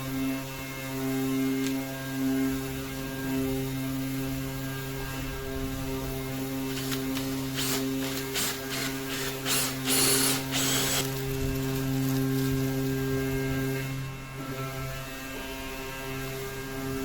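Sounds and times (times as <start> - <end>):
steady machine hum: 2.2 - 17.0
short noisy strokes: 6.7 - 11.2.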